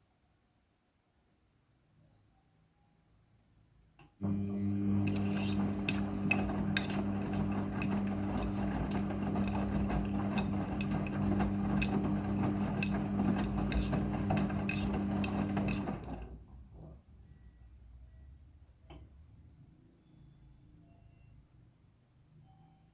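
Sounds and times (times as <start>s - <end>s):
washing machine motor hum: 4.2s - 16.5s.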